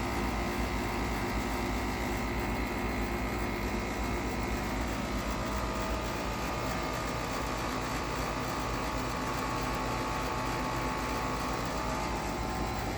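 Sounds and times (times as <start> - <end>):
hvac unit hum and fan noise: 0.0 - 12.9
held whine: 11.3 - 12.9.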